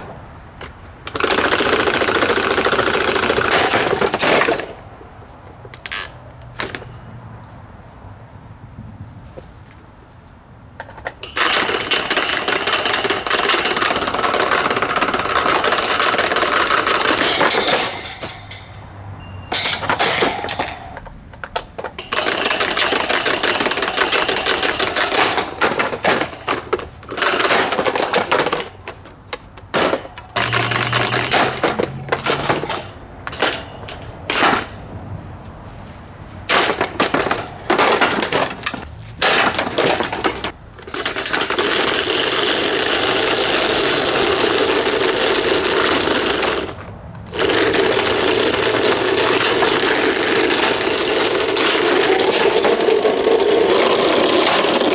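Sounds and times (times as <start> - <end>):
plastic fan being smashed: 11.2 - 18.7, 19.5 - 34.9, 36.5 - 42.0, 46.3 - 54.9.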